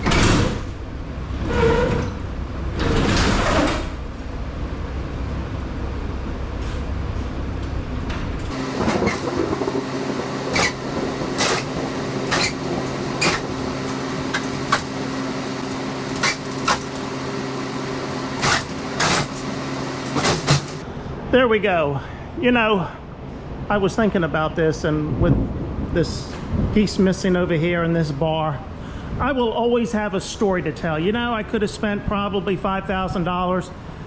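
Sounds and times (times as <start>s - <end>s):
garage door rumbling: 0.0s - 4.8s, 6.6s - 20.8s
steady low hum: 3.9s - 23.8s.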